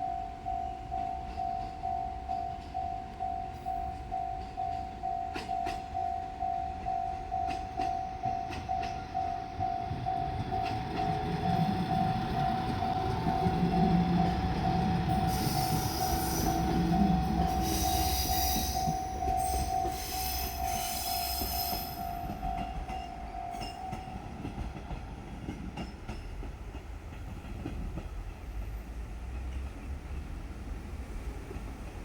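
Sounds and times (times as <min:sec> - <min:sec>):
level crossing warning bell: 0:00.0 - 0:25.0
wheels squealing on rails: 0:07.3 - 0:24.9.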